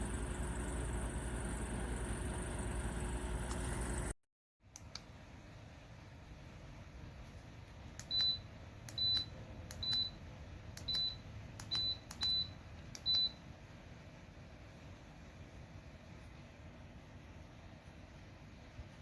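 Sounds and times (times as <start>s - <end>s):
faint low hum: 0.0s - 4.1s.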